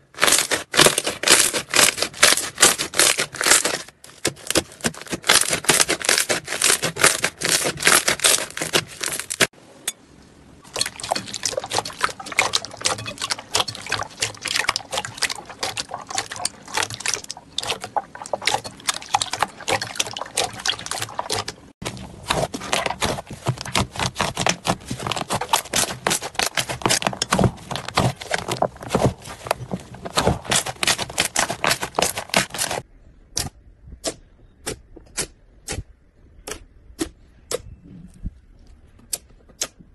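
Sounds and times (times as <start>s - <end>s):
slime crackling and popping: 0.2s - 9.5s.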